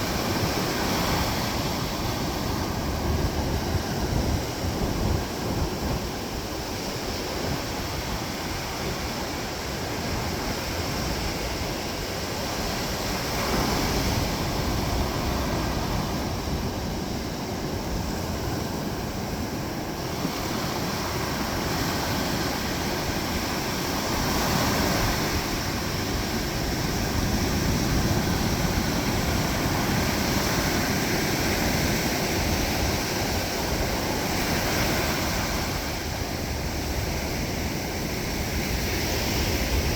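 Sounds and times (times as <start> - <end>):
ocean waves crashing on beach: 0.0 - 39.9.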